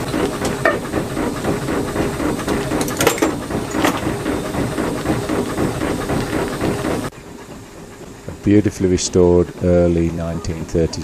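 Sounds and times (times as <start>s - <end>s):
steam engine running: 0.0s - 11.0s.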